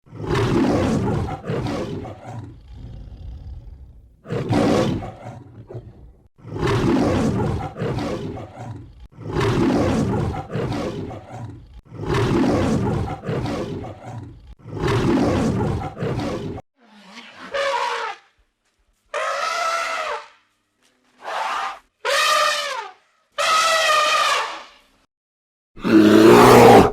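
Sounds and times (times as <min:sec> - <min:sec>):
lion roaring: 0:00.0 - 0:16.6, 0:25.8 - 0:26.9
elephant trumpeting: 0:16.8 - 0:18.3, 0:19.1 - 0:20.4, 0:21.2 - 0:24.8.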